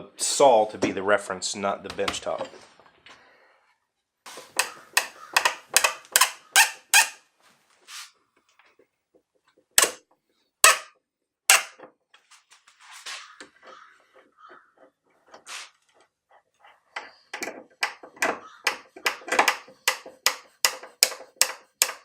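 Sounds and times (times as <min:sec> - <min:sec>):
wrench squeaking: 0:04.4 - 0:07.2.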